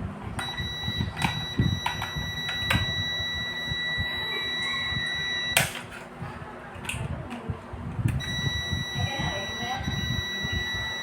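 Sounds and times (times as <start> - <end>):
high-pitched electronic buzzer: 0.4 - 5.7, 8.2 - 11.0.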